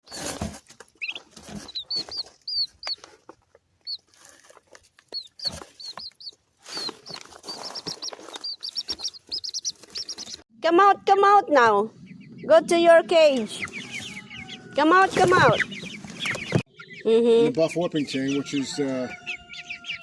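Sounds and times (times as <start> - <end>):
chicks peeping: 0.1 - 10.4, 11.9 - 20.0
scuffling and rustling: 0.1 - 10.4.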